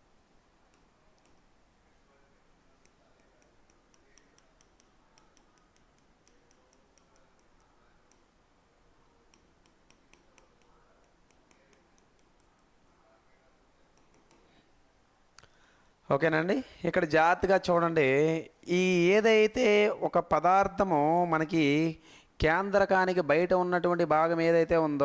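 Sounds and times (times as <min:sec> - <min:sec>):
faint rapid light clicking: 0:00.7 - 0:01.5.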